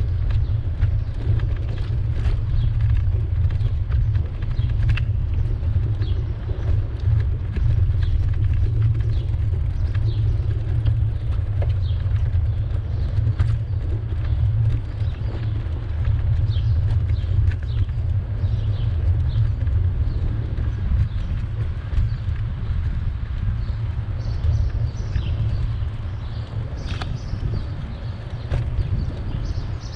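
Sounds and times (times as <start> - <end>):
wind and riding rumble: 0.0 - 29.9.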